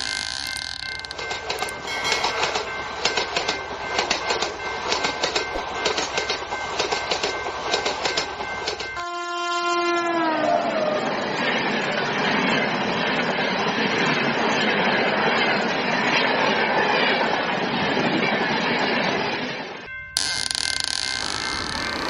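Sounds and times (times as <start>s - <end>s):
train wheels clickety-clack: 1.2s - 9.0s
train horn blowing: 9.0s - 10.8s.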